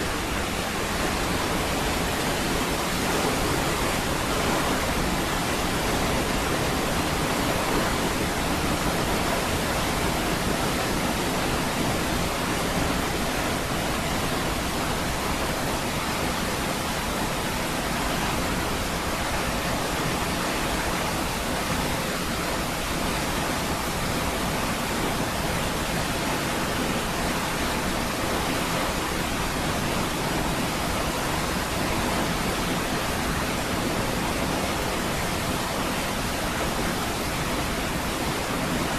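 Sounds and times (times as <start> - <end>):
waterfall roaring: 0.0 - 38.9.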